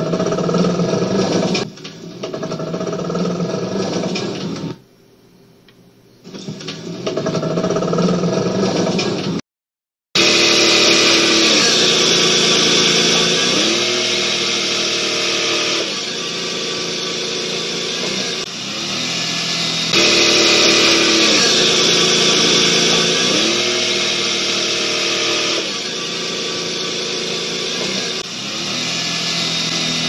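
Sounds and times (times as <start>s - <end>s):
car engine running: 0.0s - 1.7s, 10.2s - 30.0s.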